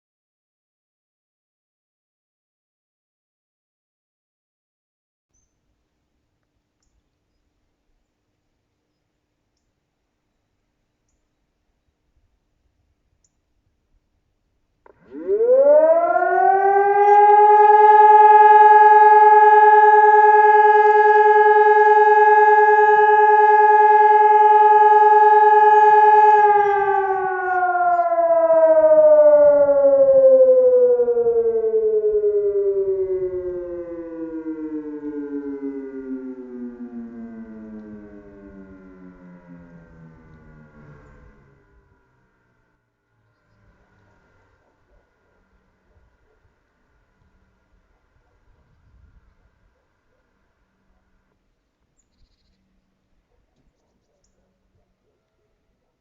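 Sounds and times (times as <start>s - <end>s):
motor siren steady tone: 14.8s - 55.9s.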